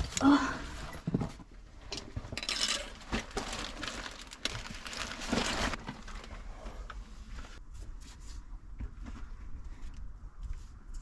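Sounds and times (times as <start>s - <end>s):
rustling and scraping of climbing: 0.0s - 11.0s.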